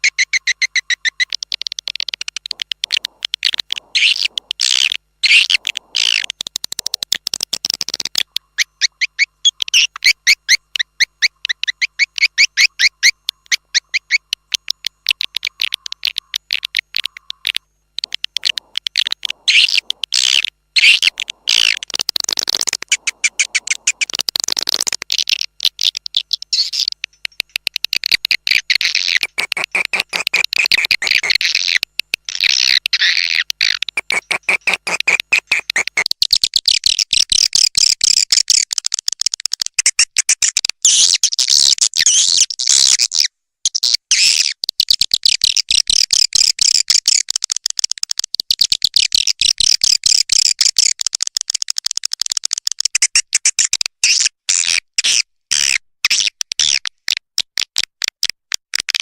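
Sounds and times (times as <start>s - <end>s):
swiftlets twittering: 0.0s - 36.1s.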